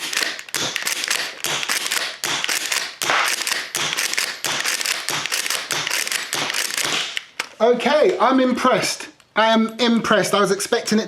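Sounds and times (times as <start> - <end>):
airsoft rifle shots: 0.0 - 7.3
rifle lever clacking: 0.0 - 7.4.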